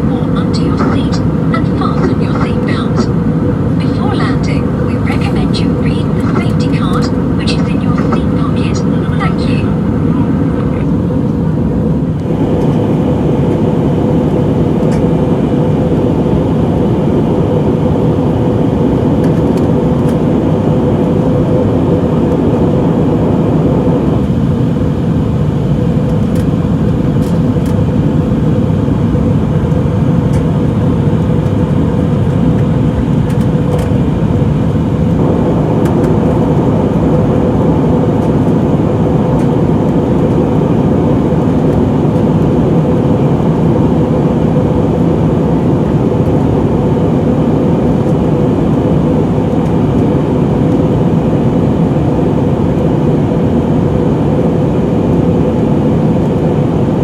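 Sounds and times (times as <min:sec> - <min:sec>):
aircraft cabin air rush and hum: 0:00.0 - 0:57.0.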